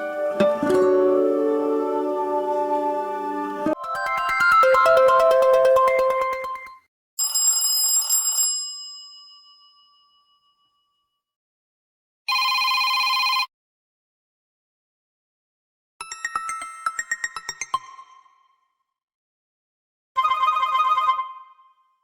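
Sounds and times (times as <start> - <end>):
telephone bell ring: 3.8 - 8.8, 12.3 - 13.5
bell-like phone chime: 3.8 - 10.8.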